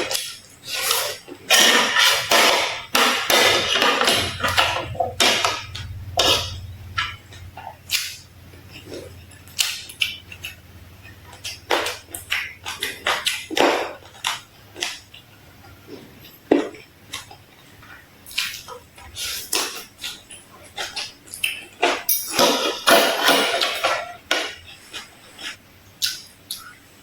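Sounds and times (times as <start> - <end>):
cutlery clinking against dish: 20.9 - 24.6.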